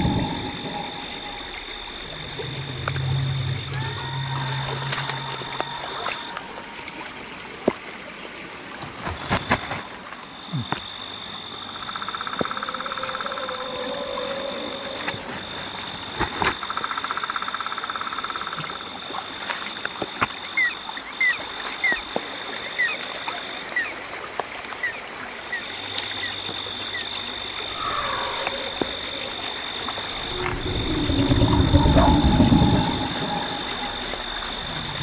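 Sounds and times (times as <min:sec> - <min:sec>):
low rumbling noise: 0:00.0 - 0:07.0, 0:27.6 - 0:35.0
high insect trill: 0:00.0 - 0:07.4, 0:25.6 - 0:35.0.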